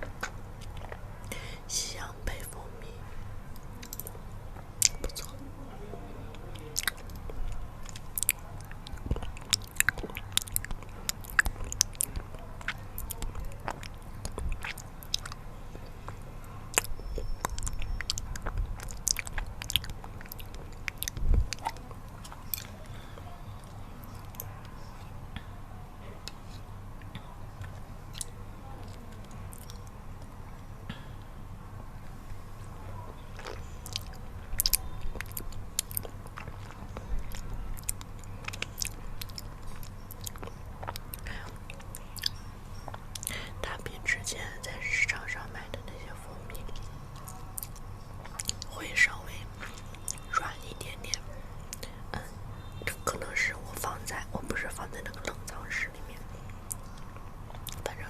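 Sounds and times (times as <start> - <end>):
low background hum: 0.0 - 58.0
wet mouth clicks: 4.8 - 5.4, 6.8 - 15.4, 16.1 - 22.8, 33.4 - 43.8, 55.0 - 58.0
biting and chewing: 6.3 - 24.5, 33.1 - 43.5, 46.6 - 50.6.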